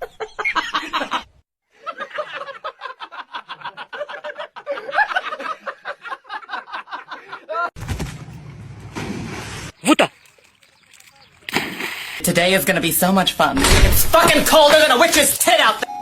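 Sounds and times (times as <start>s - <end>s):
person laughing hard: 1.9s - 7.7s.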